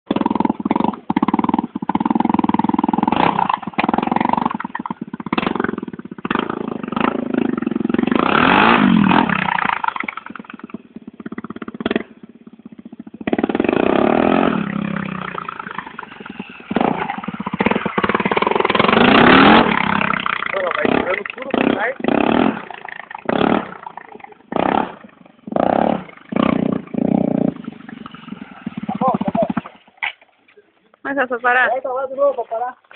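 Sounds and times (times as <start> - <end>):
motorcycle engine revving: 0.1 - 31.7.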